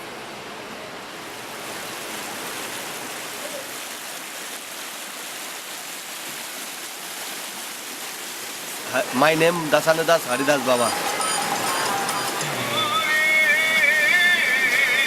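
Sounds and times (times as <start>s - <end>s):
steady rushing noise: 8.8s - 15.0s.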